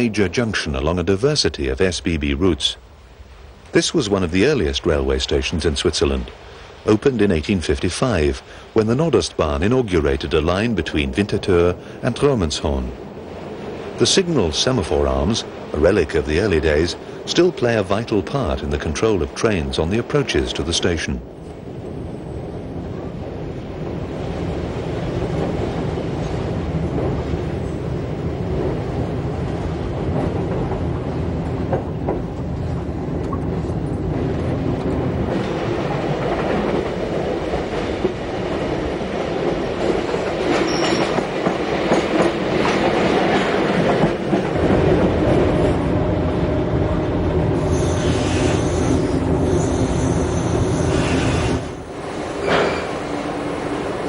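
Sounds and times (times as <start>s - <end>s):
train rumbling on track: 0.0s - 54.0s
wheels clattering over rails: 28.6s - 46.0s.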